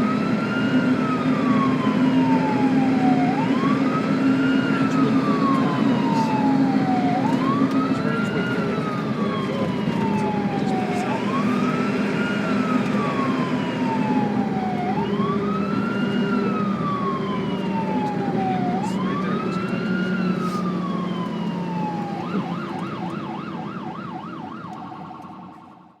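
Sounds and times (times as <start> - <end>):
ambulance siren wailing: 0.0 - 26.0.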